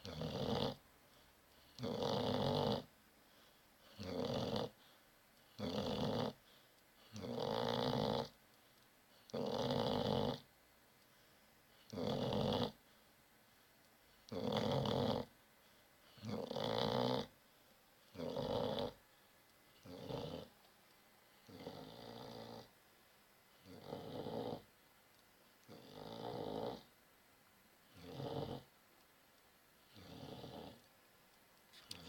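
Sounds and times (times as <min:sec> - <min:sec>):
slow regular snoring: 0:00.0 - 0:10.5, 0:11.1 - 0:13.1, 0:14.1 - 0:20.6, 0:21.3 - 0:22.8, 0:23.5 - 0:24.7, 0:25.6 - 0:26.9, 0:27.8 - 0:28.7, 0:29.8 - 0:30.9.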